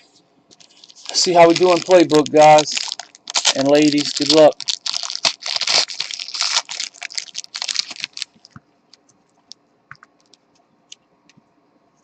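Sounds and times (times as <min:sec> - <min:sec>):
card wrappers tearing and crinkling: 0:00.6 - 0:08.5.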